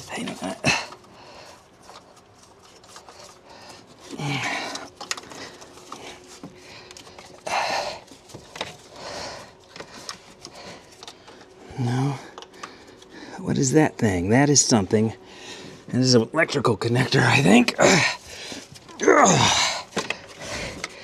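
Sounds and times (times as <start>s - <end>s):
person breathing heavily: 0.6s - 1.7s, 3.1s - 8.2s, 8.8s - 13.4s, 15.2s - 15.9s, 17.8s - 21.0s
person grunting: 17.7s - 18.2s, 19.0s - 19.9s.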